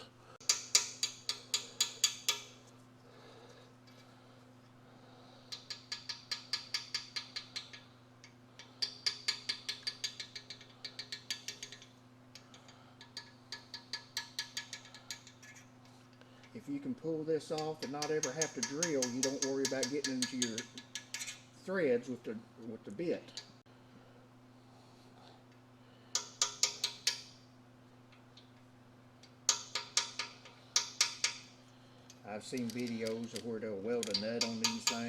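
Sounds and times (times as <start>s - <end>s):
faint steady hum: 0.0s - 35.0s
rapid metal clicks: 5.5s - 15.7s, 17.5s - 21.4s, 32.1s - 35.0s.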